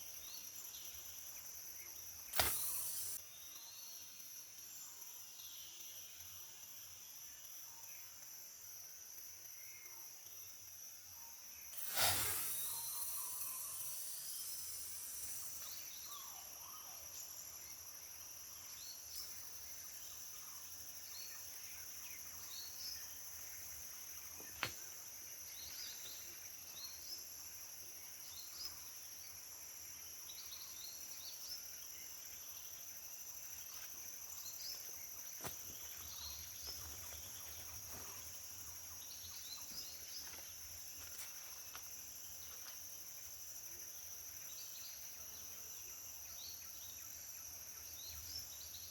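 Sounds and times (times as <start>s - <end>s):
high-pitched insect drone: 2.3s - 3.2s, 11.7s - 17.8s
sharp click: 2.3s - 3.2s
bird chirps: 11.8s - 17.1s.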